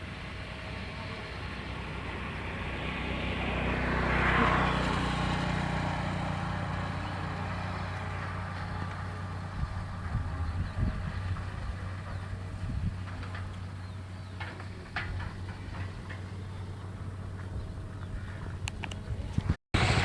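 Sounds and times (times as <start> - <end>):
vehicle passing close by: 0.0 - 13.0, 19.8 - 20.0
low engine hum: 0.0 - 20.0.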